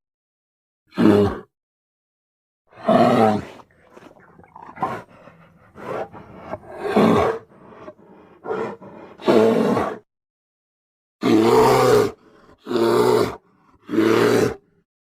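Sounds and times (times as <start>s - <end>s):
bear growling and grunting: 0.9s - 1.5s, 2.7s - 10.1s, 11.2s - 14.8s
bear roaring: 2.7s - 10.0s, 11.2s - 14.6s.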